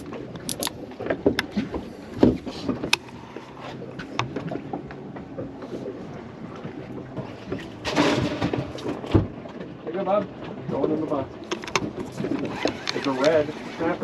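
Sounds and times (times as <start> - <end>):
knocks and clicks of handling: 0.0 - 5.5, 11.4 - 13.4.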